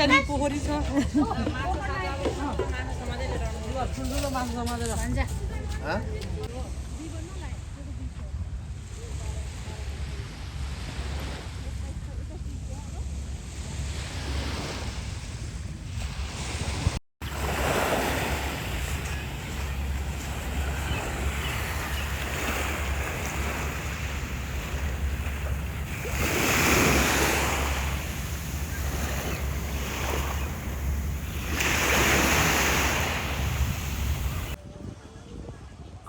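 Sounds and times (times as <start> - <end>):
waves washing onto beach: 8.7 - 34.6
wind buffeting microphone: 11.9 - 36.0.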